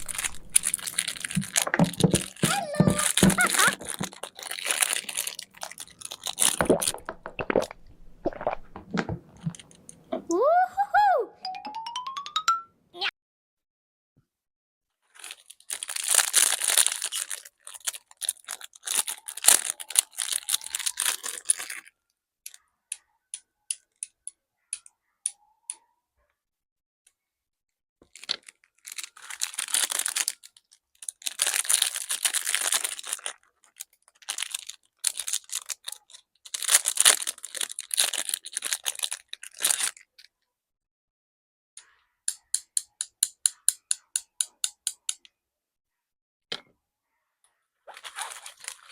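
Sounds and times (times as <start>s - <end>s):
packaging tearing and crackling: 0.0s - 7.8s, 15.2s - 21.9s, 28.1s - 40.1s, 47.9s - 48.9s.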